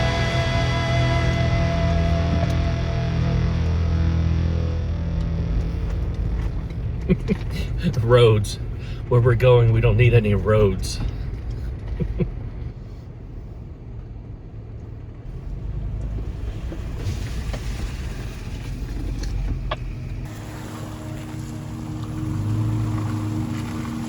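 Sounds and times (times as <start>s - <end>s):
engine low rumble: 0.0s - 24.0s
tyres hissing through mud: 20.3s - 24.0s.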